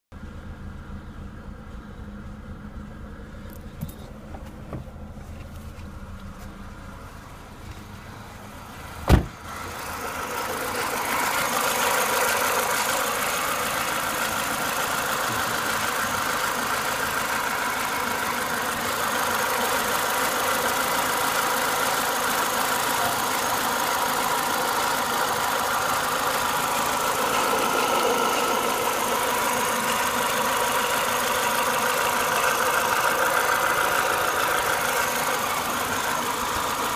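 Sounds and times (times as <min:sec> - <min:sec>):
car engine idling with knocking: 0:00.2 - 0:36.9.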